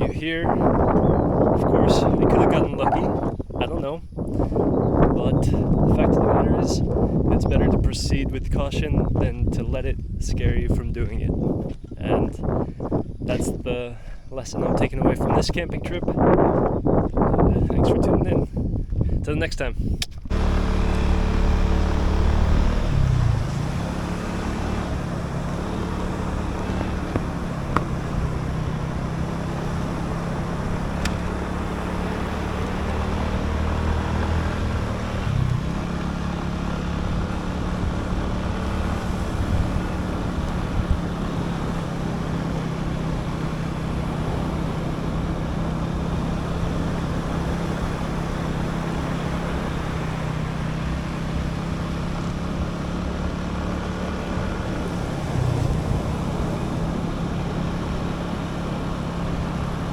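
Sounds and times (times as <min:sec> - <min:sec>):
vehicle engine running: 0:00.0 - 0:08.2, 0:20.2 - 0:59.9.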